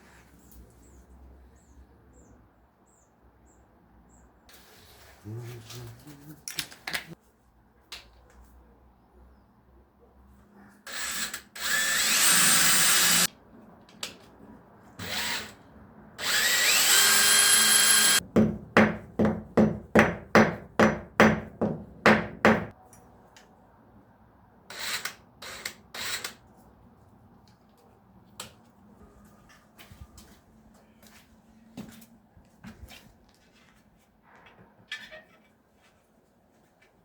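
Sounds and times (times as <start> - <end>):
power drill running: 10.9 - 13.3, 16.2 - 18.2
short drill trigger bursts: 10.9 - 13.3, 16.2 - 18.2.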